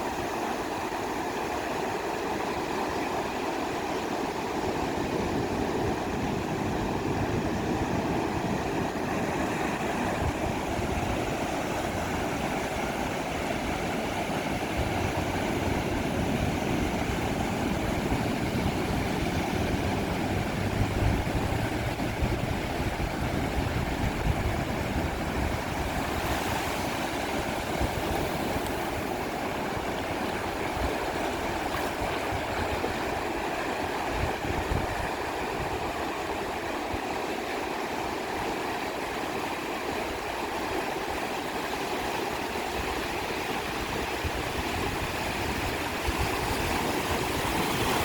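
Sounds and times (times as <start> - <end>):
waves breaking on beach: 0.0 - 48.0
low rumble: 18.8 - 23.8.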